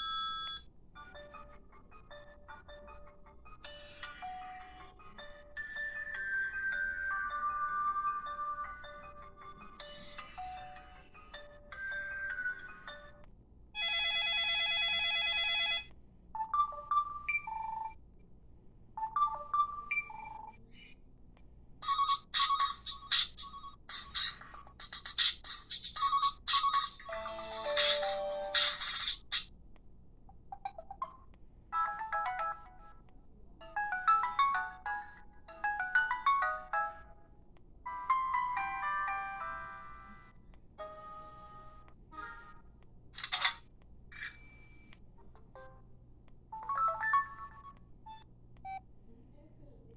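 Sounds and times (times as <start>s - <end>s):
warbling phone ring trill: 0.0s - 1.4s, 43.3s - 44.9s
chiming ringtone melody: 0.0s - 13.2s, 16.4s - 18.0s, 33.6s - 37.2s, 37.9s - 41.8s, 43.4s - 45.0s, 46.6s - 47.8s.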